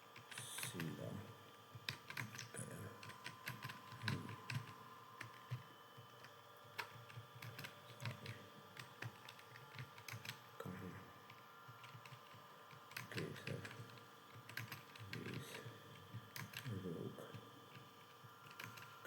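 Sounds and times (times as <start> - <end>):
computer keyboard typing: 1.7 - 10.4, 11.3 - 19.0.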